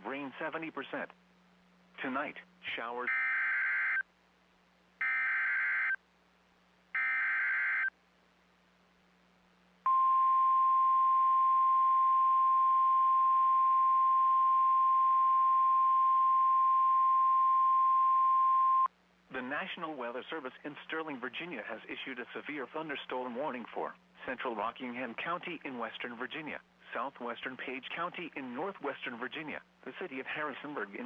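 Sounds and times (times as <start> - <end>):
steady warning alarm tone: 3.1 - 4.0, 5.0 - 6.0, 7.0 - 7.9.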